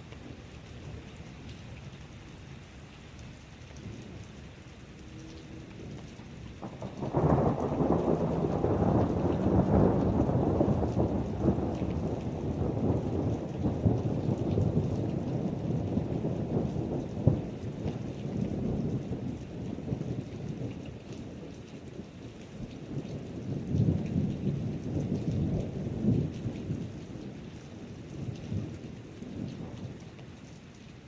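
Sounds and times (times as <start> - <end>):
steady rain: 0.0 - 31.0
thunder rumbling: 6.6 - 21.5.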